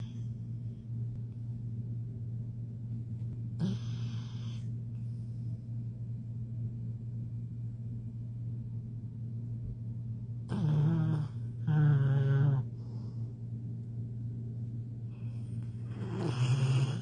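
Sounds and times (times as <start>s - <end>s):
low steady snoring: 0.0s - 0.3s, 3.6s - 5.4s, 10.4s - 13.4s, 15.1s - 17.0s.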